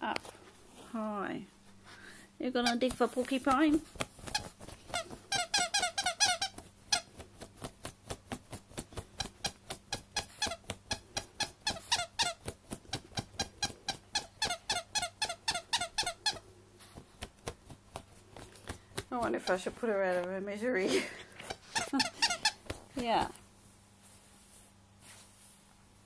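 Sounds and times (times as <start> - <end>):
squeaky dog toy squeaking: 2.5 - 3.0, 4.3 - 7.1, 9.2 - 16.4, 21.4 - 22.6
dog pawing through sheet: 2.9 - 5.4.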